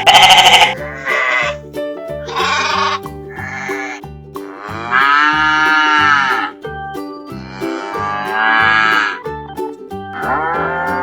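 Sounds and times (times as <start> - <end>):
sheep or goat bleats: 0.0 - 1.6, 2.3 - 6.5, 7.4 - 9.2
upbeat background music: 0.0 - 11.0.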